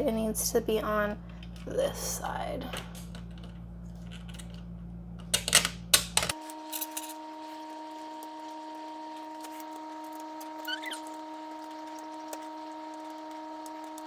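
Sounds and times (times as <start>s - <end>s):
background hum: 0.0s - 14.0s
small parts clicking and knocking: 2.8s - 4.6s.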